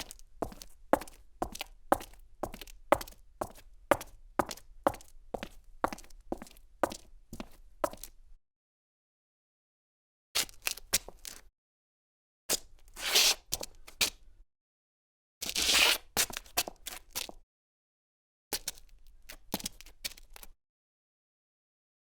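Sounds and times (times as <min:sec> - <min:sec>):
shoe scuffing: 0:00.0 - 0:08.1, 0:15.4 - 0:17.4.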